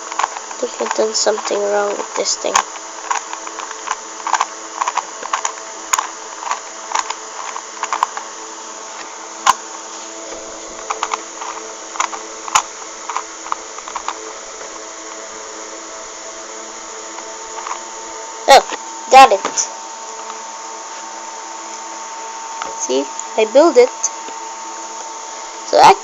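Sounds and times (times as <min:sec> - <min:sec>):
puzzle cube clicking: 0:00.0 - 0:08.2
steady low hum: 0:00.0 - 0:26.0.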